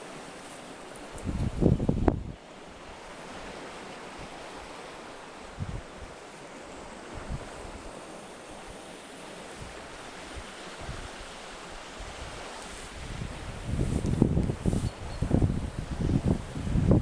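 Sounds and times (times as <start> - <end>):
wind buffeting microphone: 1.1 - 2.4, 5.5 - 6.2, 7.0 - 8.0, 12.0 - 17.0.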